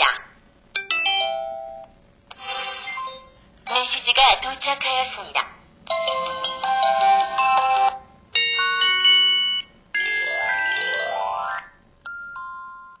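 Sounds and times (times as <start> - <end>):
rising run of phone tones: 10.0 - 11.8.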